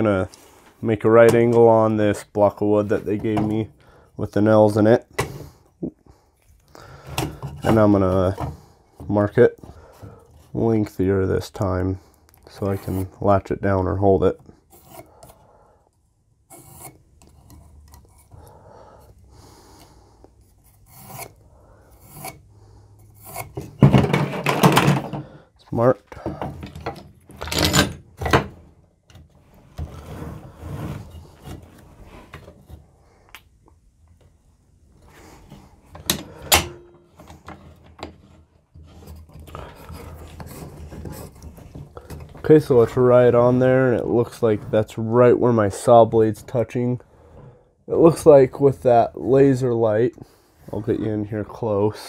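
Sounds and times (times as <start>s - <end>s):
pencil scratching on wood: 14.7s - 15.4s, 16.5s - 18.4s, 20.4s - 22.4s.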